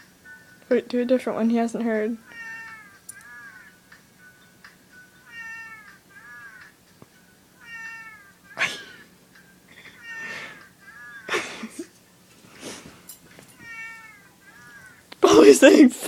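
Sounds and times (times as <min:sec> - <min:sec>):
cat hissing: 0:02.2 - 0:03.3, 0:07.6 - 0:09.1, 0:09.9 - 0:11.3
cat meowing: 0:02.2 - 0:03.8, 0:05.2 - 0:06.7, 0:07.6 - 0:09.0, 0:10.0 - 0:11.3, 0:13.5 - 0:15.1.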